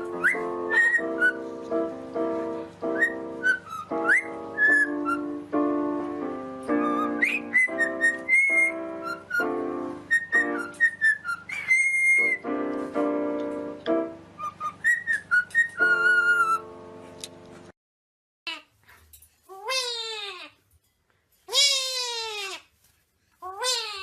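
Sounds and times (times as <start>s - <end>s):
whistled tune: 0.0s - 1.4s, 2.9s - 5.4s, 6.7s - 12.6s, 14.4s - 16.7s
music with held chords: 0.0s - 10.8s, 12.2s - 14.8s, 15.4s - 17.7s.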